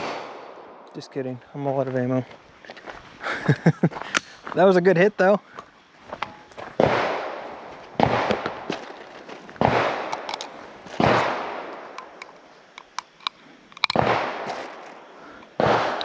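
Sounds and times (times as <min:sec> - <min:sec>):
echoing gunshots: 0:00.0 - 0:01.1, 0:06.8 - 0:08.7, 0:09.6 - 0:10.4, 0:11.0 - 0:12.2, 0:13.9 - 0:14.8, 0:15.6 - 0:16.0.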